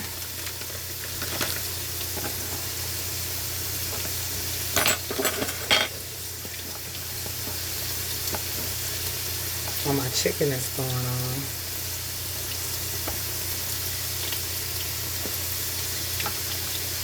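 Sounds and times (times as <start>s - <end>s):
chicken sizzling in a pan: 0.0s - 17.0s.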